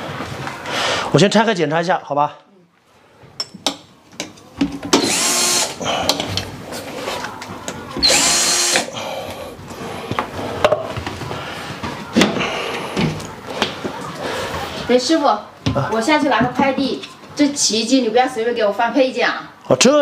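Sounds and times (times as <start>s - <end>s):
power drill backing out screws: 4.9s - 5.8s, 8.0s - 8.9s.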